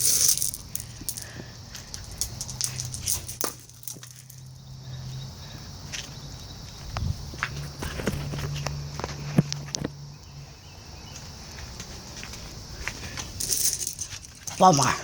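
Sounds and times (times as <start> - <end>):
stones and paws on rocky ground: 0.0 - 4.4, 11.1 - 15.0.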